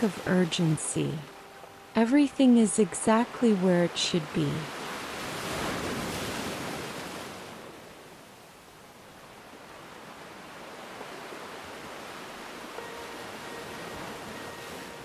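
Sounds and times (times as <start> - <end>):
ocean waves breaking on shore: 0.0 - 15.0.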